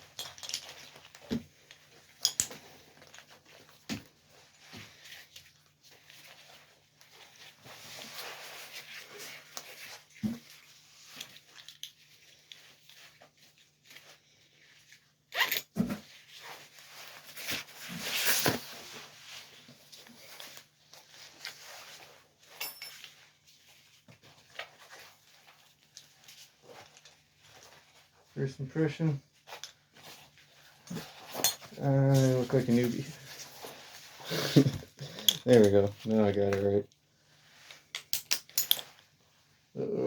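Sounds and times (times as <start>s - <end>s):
nylon webbing rustling through buckles: 0.0s - 28.2s.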